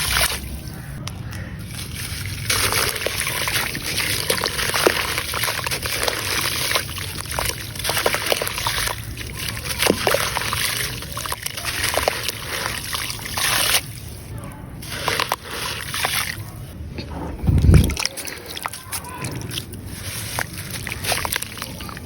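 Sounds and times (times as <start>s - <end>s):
small splashes and bubbly plops: 1.6s - 14.2s, 17.4s - 22.0s.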